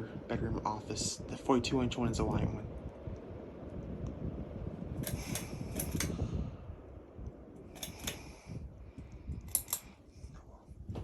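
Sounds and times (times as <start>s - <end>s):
ceiling fan running: 0.0s - 11.0s
sharp light clicks: 9.5s - 9.9s.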